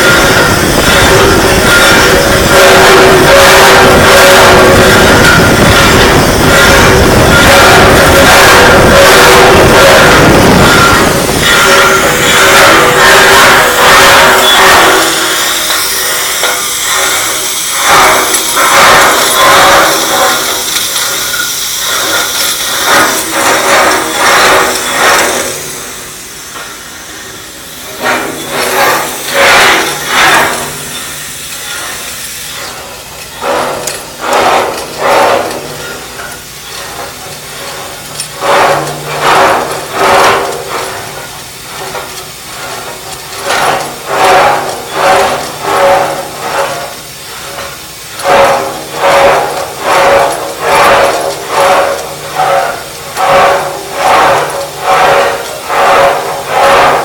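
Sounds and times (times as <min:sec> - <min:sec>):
grinding surges: 0:00.0 - 0:57.0
pipe grinder machine hum: 0:00.0 - 0:57.0.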